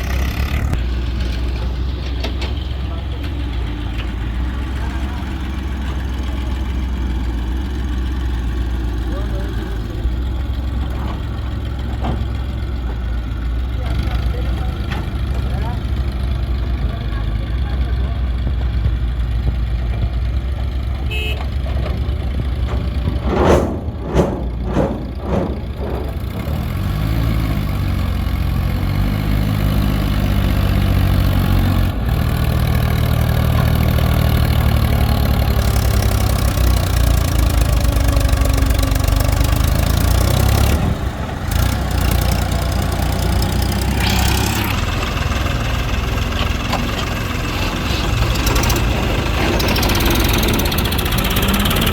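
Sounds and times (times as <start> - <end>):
diesel engines revving: 0.0 - 51.9
loud knocks: 21.4 - 27.7.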